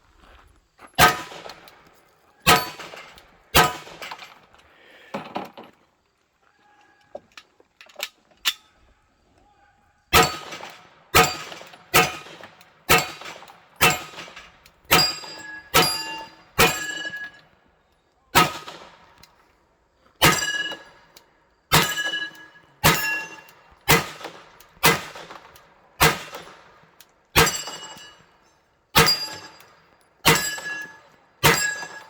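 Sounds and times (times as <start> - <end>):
pistol shots: 1.0 - 1.7, 2.4 - 4.1, 10.1 - 17.0, 18.4 - 19.1, 21.7 - 26.6, 30.3 - 32.0
steel plates ringing: 13.8 - 14.2, 14.9 - 17.5, 20.2 - 21.1, 21.7 - 23.6, 27.4 - 32.0.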